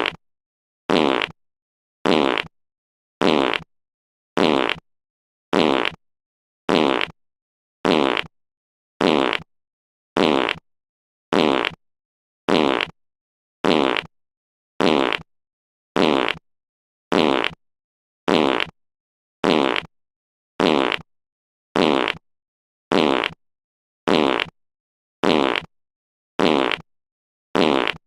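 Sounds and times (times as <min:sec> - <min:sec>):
fart sound effect: 0:00.0 - 0:00.2, 0:00.9 - 0:01.4, 0:02.0 - 0:02.5, 0:03.2 - 0:03.7, 0:04.4 - 0:04.8, 0:05.5 - 0:06.0, 0:06.7 - 0:07.2, 0:07.8 - 0:08.3, 0:09.0 - 0:09.5, 0:10.2 - 0:10.6, 0:11.3 - 0:11.8, 0:12.5 - 0:13.0, 0:13.6 - 0:14.1, 0:14.8 - 0:15.3, 0:16.0 - 0:16.4, 0:17.1 - 0:17.6, 0:18.3 - 0:18.8, 0:19.4 - 0:19.9, 0:20.6 - 0:21.1, 0:21.8 - 0:22.2, 0:22.9 - 0:23.4, 0:24.1 - 0:24.5, 0:25.2 - 0:25.7, 0:26.4 - 0:26.8, 0:27.6 - 0:28.0.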